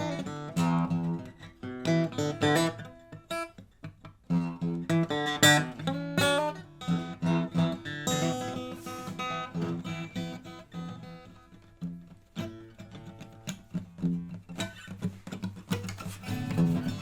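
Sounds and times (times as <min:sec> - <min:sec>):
acoustic guitar playing: 0:00.0 - 0:17.0.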